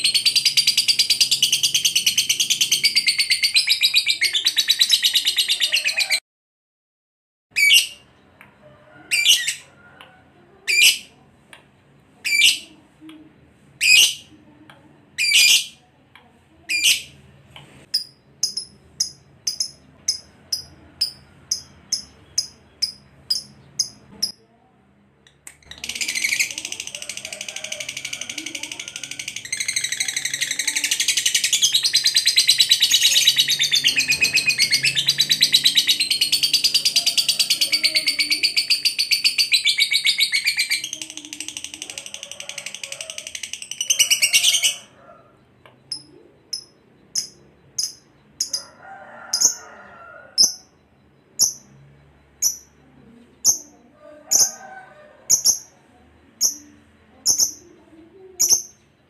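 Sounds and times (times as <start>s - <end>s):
bird trilling chatter: 18.0s - 24.4s, 25.7s - 45.0s, 45.8s - 48.7s, 49.3s - 51.8s.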